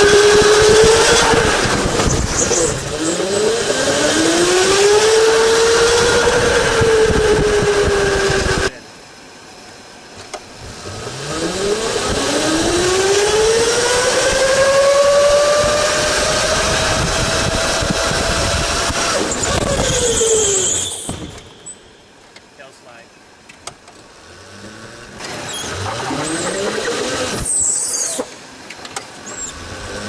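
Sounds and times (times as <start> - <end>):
electric go-kart motor whining: 0.0 - 8.8, 10.3 - 22.3, 24.0 - 30.0.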